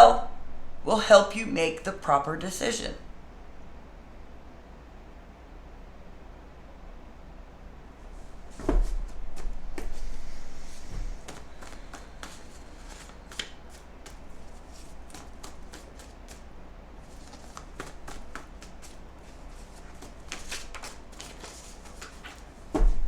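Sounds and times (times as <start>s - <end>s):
cards being shuffled: 10.7s - 22.8s.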